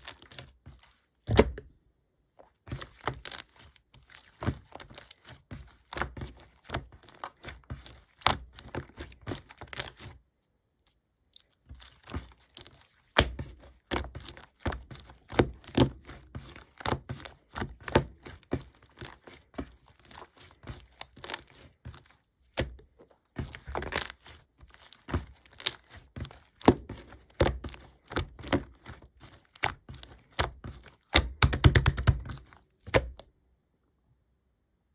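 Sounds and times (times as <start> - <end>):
handling clicks taps and crinkles: 10.8 - 33.3.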